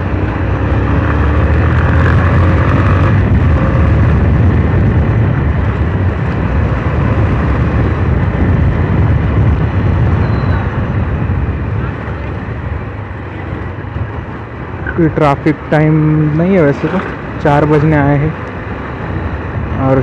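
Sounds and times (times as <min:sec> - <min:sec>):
motorcycle engine running: 0:00.0 - 0:15.0
wind rumble on microphone: 0:00.0 - 0:20.0.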